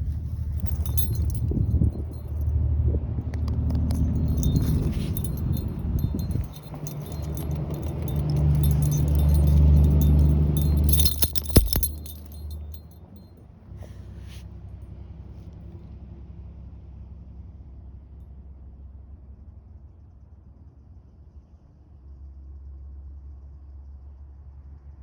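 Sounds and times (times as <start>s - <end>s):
metallic jingling: 0.0s - 2.5s, 3.5s - 13.3s.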